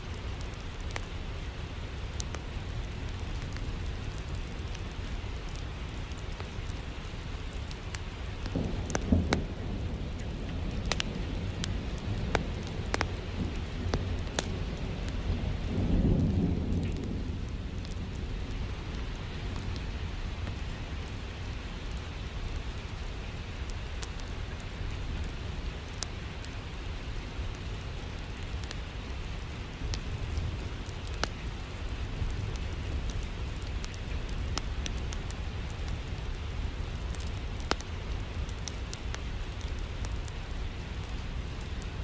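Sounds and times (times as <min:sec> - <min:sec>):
steady rain: 0:00.0 - 0:42.0
sharp crackles: 0:02.0 - 0:18.6, 0:19.5 - 0:42.0
thunder rolling: 0:08.6 - 0:18.3.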